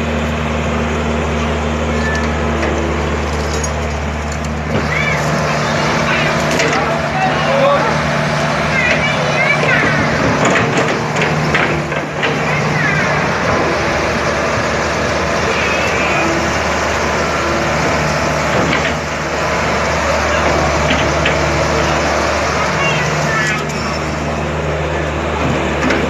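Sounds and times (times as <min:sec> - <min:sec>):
excavator diesel engine: 0:00.0 - 0:26.0
high squeals: 0:15.0 - 0:18.5.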